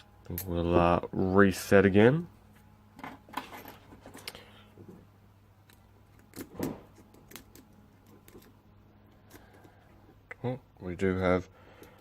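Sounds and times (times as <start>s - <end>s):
lock picks clicking and scraping: 5.6s - 10.2s.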